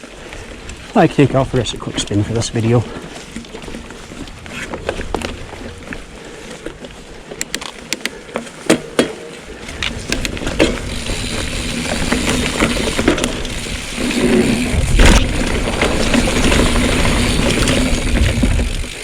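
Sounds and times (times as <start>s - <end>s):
tyres and wind rushing: 0.0s - 8.4s, 9.5s - 19.0s
bike clicks and knocks: 1.7s - 19.0s.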